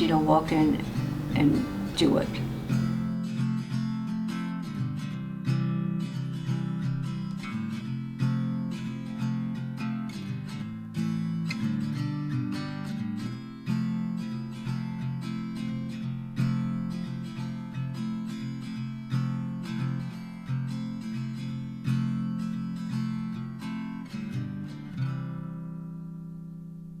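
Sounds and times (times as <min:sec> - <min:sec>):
acoustic guitar strummed and picked: 0:00.0 - 0:27.0.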